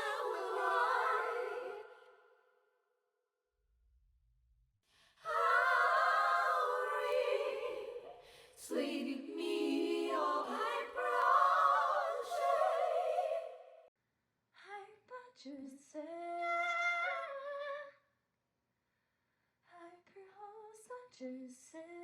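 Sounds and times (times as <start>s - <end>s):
wordless choir singing: 0.0s - 2.3s, 5.2s - 13.9s.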